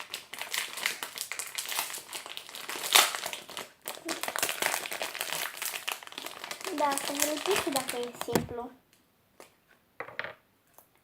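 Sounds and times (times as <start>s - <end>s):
plastic packaging crinkling: 0.0s - 8.7s.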